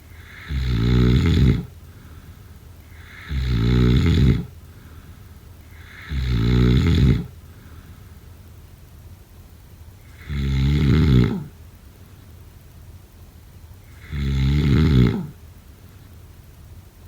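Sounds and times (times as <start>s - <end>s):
quiet breathing: 0.0s - 8.7s
person snoring: 0.1s - 1.7s, 2.9s - 4.5s, 5.7s - 7.3s, 10.1s - 11.6s, 14.0s - 15.4s.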